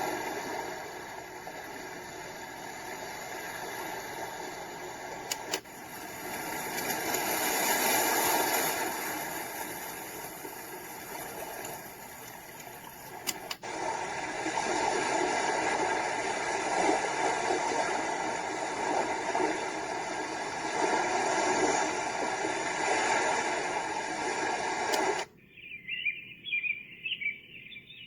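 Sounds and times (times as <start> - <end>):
steady rushing noise: 0.0 - 25.3
machine clicks: 5.2 - 7.5, 9.6 - 13.7, 24.8 - 25.3.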